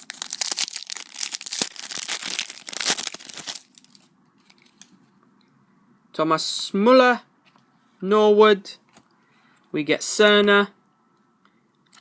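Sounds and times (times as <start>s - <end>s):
foil pack tearing and crinkling: 0.0s - 4.0s.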